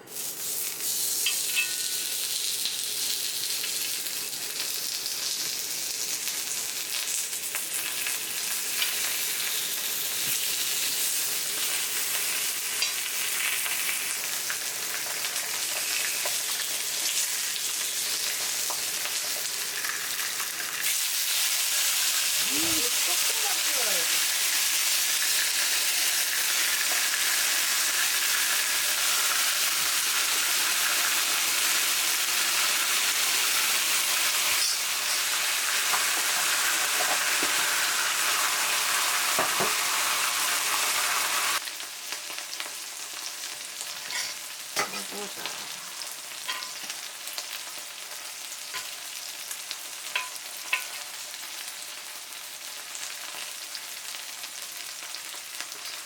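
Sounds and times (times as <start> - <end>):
food sizzling in a pan: 0.0 - 56.0
popping in a pan: 50.1 - 51.0.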